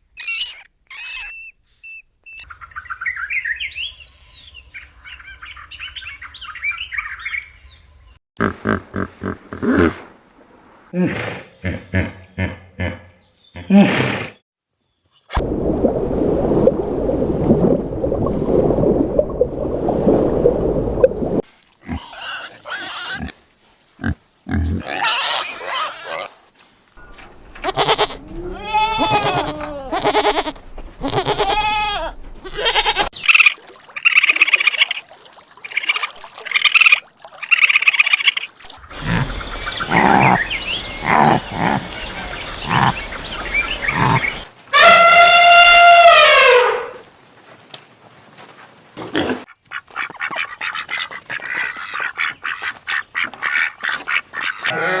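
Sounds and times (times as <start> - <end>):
farm animals calling: 27.1 - 33.5, 36.6 - 46.9, 49.4 - 55.0.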